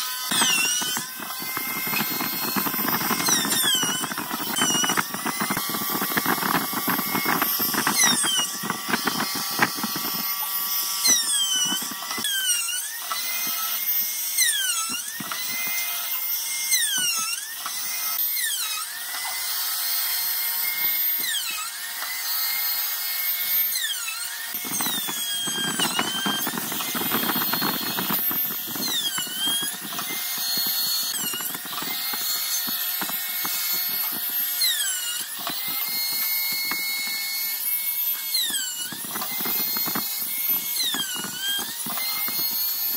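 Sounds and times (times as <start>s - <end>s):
heavy grinding noise: 0.0s - 12.3s, 24.5s - 42.9s
power tools high squealing: 0.0s - 42.9s.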